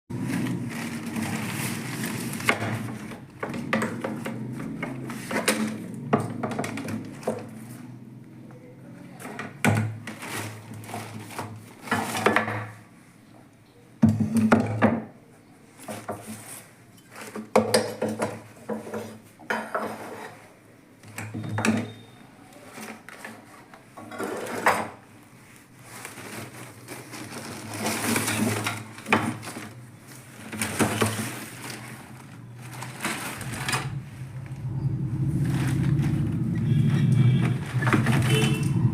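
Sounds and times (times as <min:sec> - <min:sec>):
packaging rustling: 0:00.1 - 0:06.0, 0:25.5 - 0:38.9.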